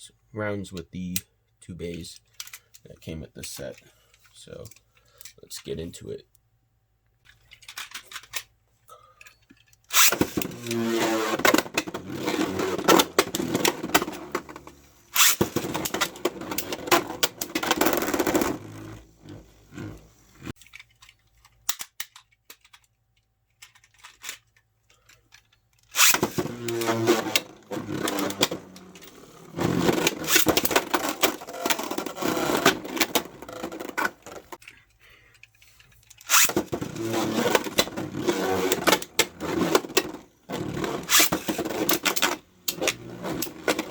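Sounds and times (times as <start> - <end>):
spinning tops clashing and scraping: 9.7 - 18.6, 25.9 - 34.7, 35.5 - 43.9
spinning top launcher whirr: 9.9 - 19.0, 26.0 - 34.5, 36.3 - 43.9.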